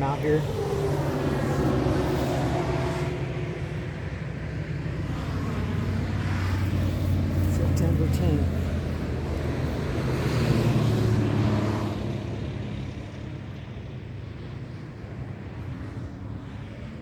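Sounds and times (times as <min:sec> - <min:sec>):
vehicle driving past: 0:00.0 - 0:13.0.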